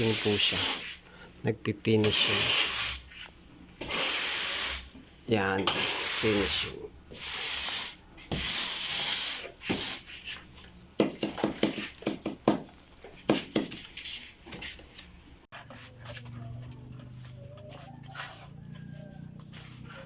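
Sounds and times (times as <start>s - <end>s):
tool scraping cement: 0.0s - 1.0s, 2.0s - 10.4s.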